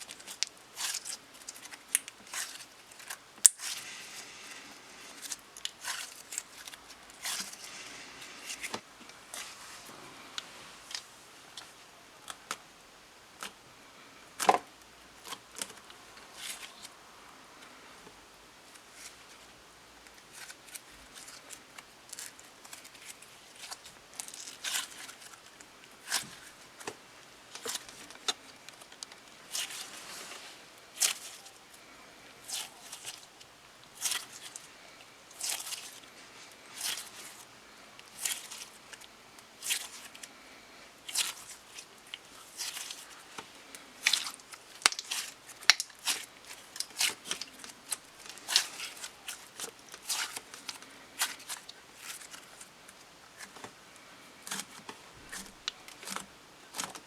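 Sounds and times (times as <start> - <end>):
slime squishing and crackling: 5.0 - 7.8, 27.5 - 31.6, 32.4 - 34.7, 35.3 - 36.1, 36.7 - 37.5, 38.1 - 40.3, 41.0 - 52.6.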